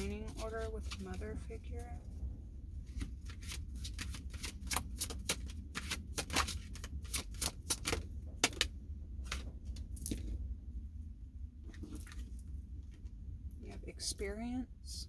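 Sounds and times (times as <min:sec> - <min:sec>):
cards being shuffled: 0:00.0 - 0:01.2, 0:03.0 - 0:10.2
low hum: 0:00.0 - 0:04.8, 0:06.6 - 0:15.0.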